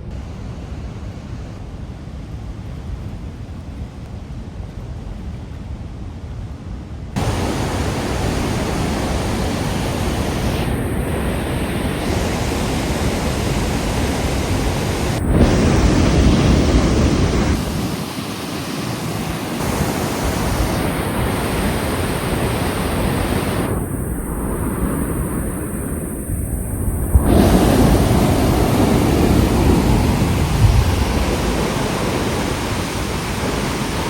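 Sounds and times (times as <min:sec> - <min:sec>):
water rushing through spillway: 0:07.2 - 0:34.0.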